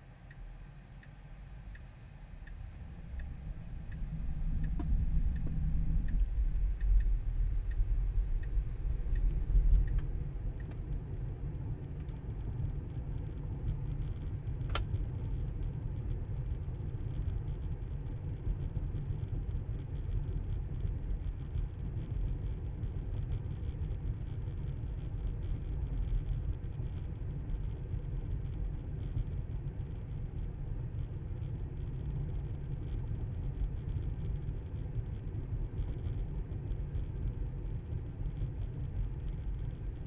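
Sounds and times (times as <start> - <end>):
turn signal ticking: 0.2 - 11.0
road and tyre rumble: 2.4 - 40.0
sharp click: 14.7 - 15.0.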